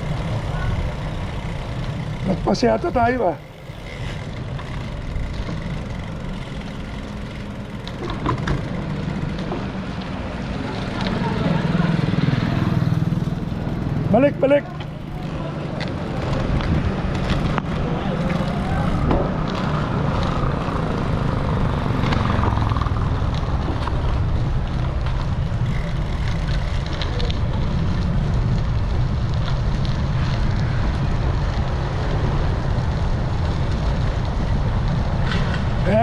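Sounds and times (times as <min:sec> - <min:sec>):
wind buffeting microphone: 0:14.9 - 0:36.0.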